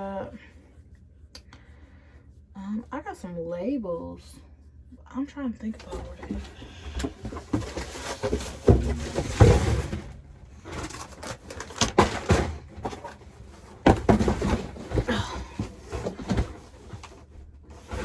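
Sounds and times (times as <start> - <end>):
rustling: 5.7 - 18.0
knocks and thumps of furniture: 5.8 - 18.0.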